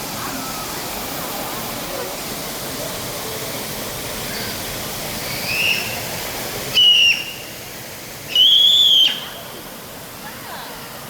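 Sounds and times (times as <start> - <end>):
rushing hiss: 0.0 - 11.0
high-pitched whistles: 5.3 - 6.0, 6.8 - 7.5, 8.3 - 9.3
faint rising whistle: 5.4 - 6.0, 6.8 - 7.6, 8.3 - 9.4.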